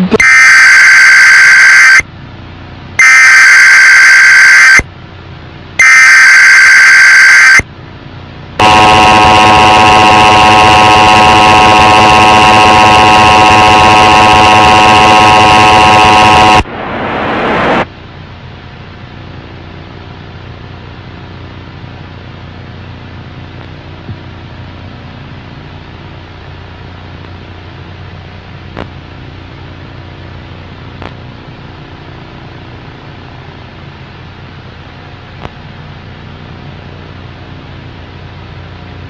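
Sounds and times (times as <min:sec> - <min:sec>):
screeching data bursts: 0:00.0 - 0:02.0, 0:03.0 - 0:04.8, 0:05.8 - 0:07.6, 0:08.6 - 0:16.6
brief rising noise: 0:13.8 - 0:17.9.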